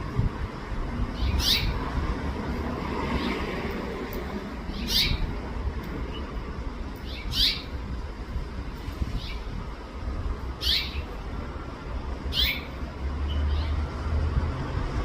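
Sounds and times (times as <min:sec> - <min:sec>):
steady low rumble: 0:00.0 - 0:15.0
finch chirping: 0:01.2 - 0:01.8, 0:04.7 - 0:05.3, 0:07.0 - 0:07.7, 0:09.1 - 0:09.5, 0:10.6 - 0:11.2, 0:12.3 - 0:13.7.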